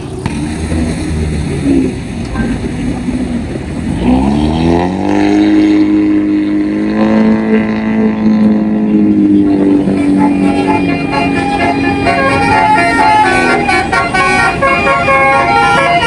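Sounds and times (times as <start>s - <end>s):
bus air horn chord: 9.8s - 16.0s.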